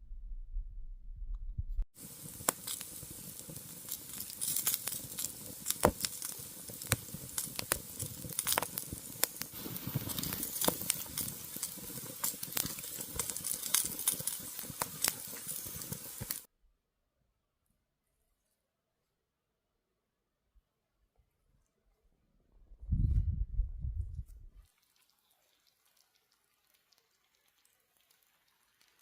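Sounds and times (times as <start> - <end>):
campfire cooking sizzle: 1.9 - 16.5, 24.6 - 29.0
fire crackling and popping: 1.9 - 16.5, 24.6 - 29.0.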